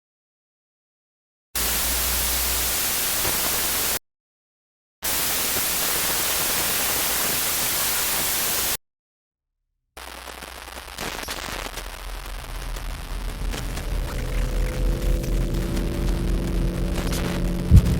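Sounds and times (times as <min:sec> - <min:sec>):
static hiss bursts: 0:01.6 - 0:04.0, 0:10.0 - 0:17.9
low rumble with crackles: 0:10.0 - 0:17.9.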